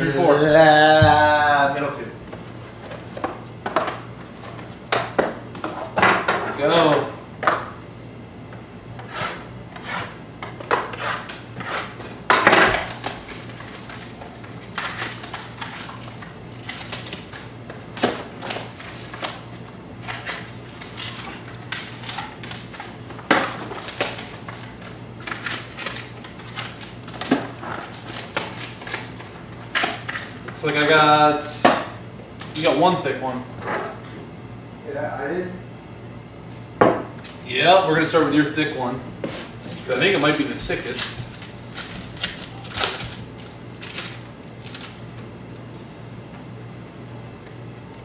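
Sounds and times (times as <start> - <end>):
steady low hum: 0.0 - 48.0
card packs crinkling and rustling: 12.8 - 31.6, 39.4 - 45.3.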